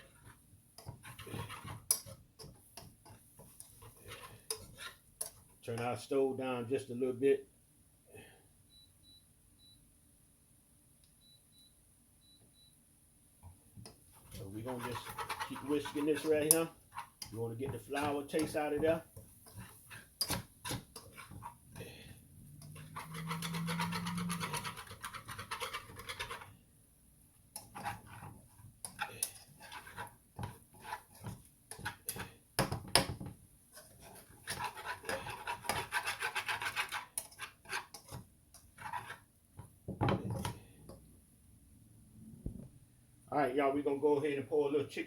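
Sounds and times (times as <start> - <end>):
whisk scraping around a pan: 0.0 - 7.0, 13.8 - 26.7, 27.4 - 41.0.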